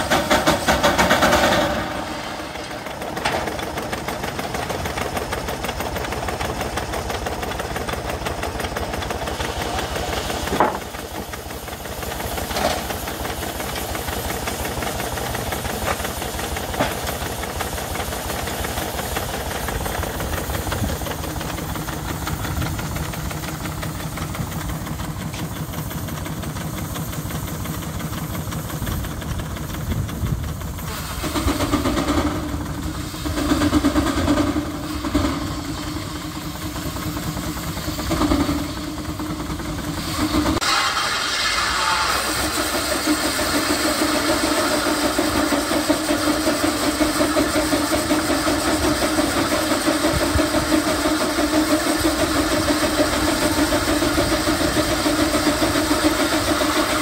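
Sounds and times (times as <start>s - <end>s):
engine running: 0.0s - 57.0s
sharp knock: 10.5s - 10.9s.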